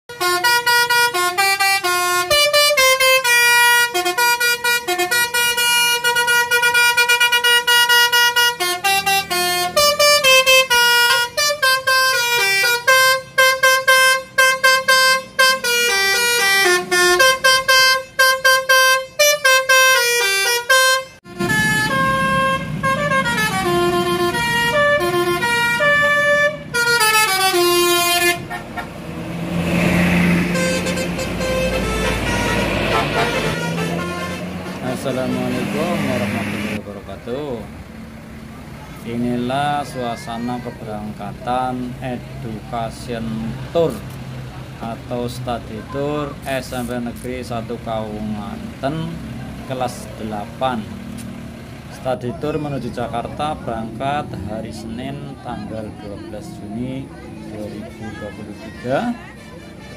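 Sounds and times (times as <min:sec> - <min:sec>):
musical air horn melody: 0:00.1 - 0:28.9, 0:30.3 - 0:36.8, 0:59.3 - 0:59.9.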